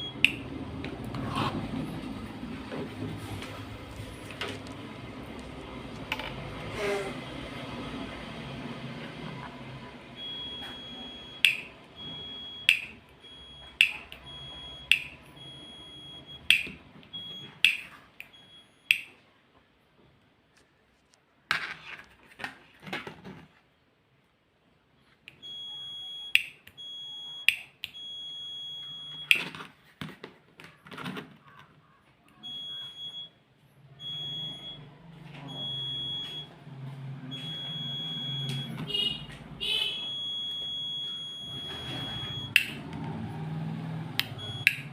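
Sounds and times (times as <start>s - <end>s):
piezo doorbell beeping: 0.0s - 0.6s, 10.1s - 19.1s, 25.4s - 29.4s, 32.4s - 33.4s, 34.0s - 36.6s, 37.2s - 42.9s, 44.2s - 44.9s.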